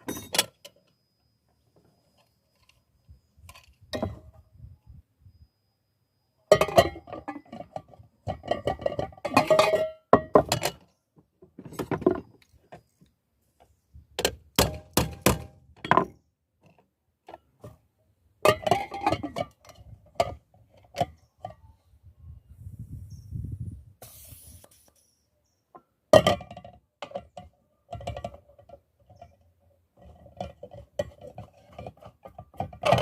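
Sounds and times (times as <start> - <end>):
metal pot and lid clattering: 6.5 - 10.8, 18.5 - 21.6, 30.0 - 33.0.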